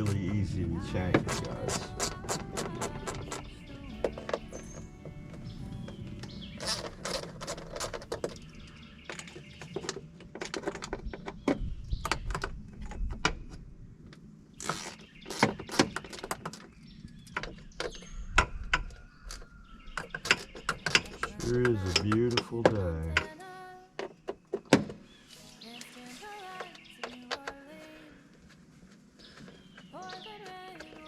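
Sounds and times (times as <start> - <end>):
hand tools clicking and knocking: 0.0 - 5.5, 6.2 - 13.6, 14.6 - 23.3
birds chirping: 0.0 - 31.0.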